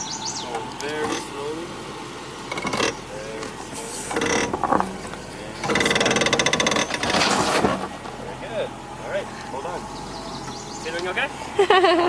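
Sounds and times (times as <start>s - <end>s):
rapid grinding rattle: 0.8s - 8.2s
vehicle scraping on rock: 2.4s - 8.6s.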